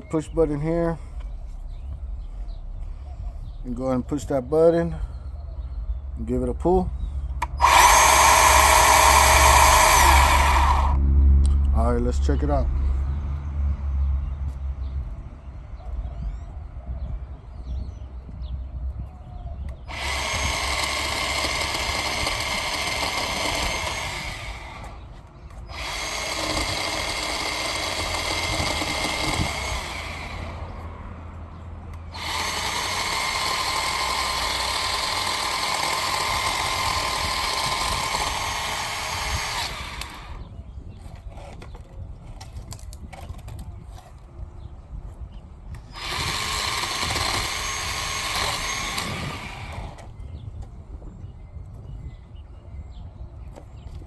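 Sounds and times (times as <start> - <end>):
electric chainsaw cutting wood: 7.4 - 11.0, 19.7 - 40.5, 45.8 - 50.2.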